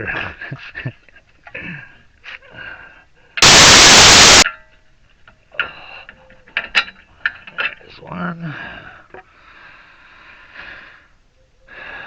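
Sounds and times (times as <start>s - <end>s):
loud hissing burst: 3.4s - 4.4s.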